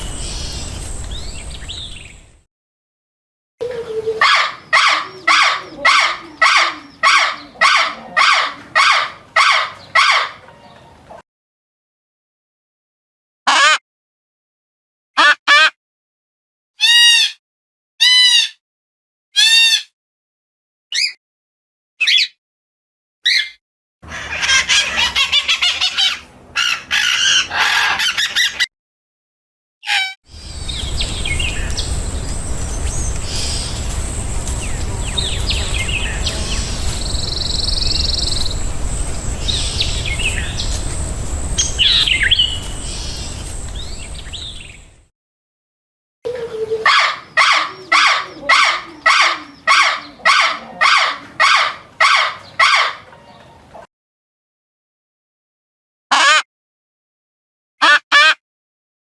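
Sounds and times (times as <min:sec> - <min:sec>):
birds calling and chirping: 0:00.0 - 0:02.4, 0:03.6 - 0:11.2, 0:23.3 - 0:28.7, 0:29.9 - 0:45.0, 0:46.3 - 0:53.8
steady background noise: 0:30.4 - 0:45.0.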